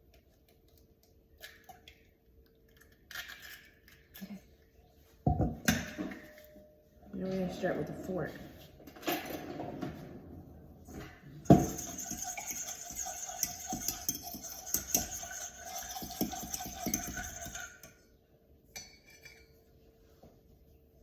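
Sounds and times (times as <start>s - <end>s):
fork clinking against bowl: 11.6s - 18.0s.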